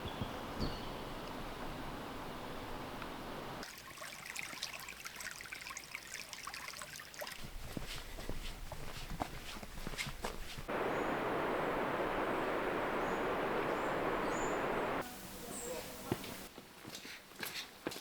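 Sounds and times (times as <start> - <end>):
water rushing: 3.2 - 7.5, 10.7 - 16.5
water trickling and dripping: 3.6 - 8.3.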